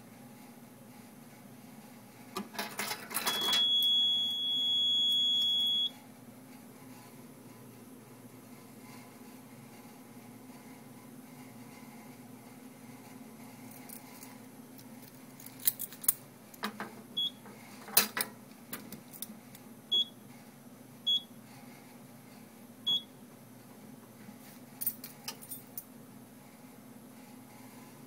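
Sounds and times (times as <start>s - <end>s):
short high beeps: 3.3s - 5.9s.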